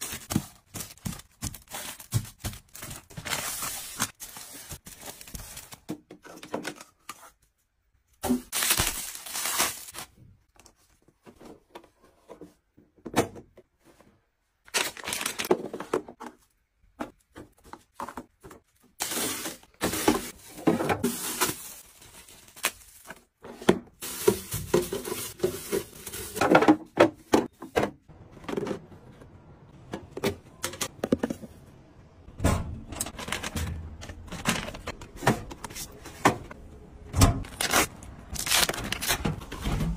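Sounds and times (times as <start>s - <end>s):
packaging rustling: 8.5s - 10.1s, 14.7s - 16.0s
objects tapping and knocking: 23.5s - 31.6s.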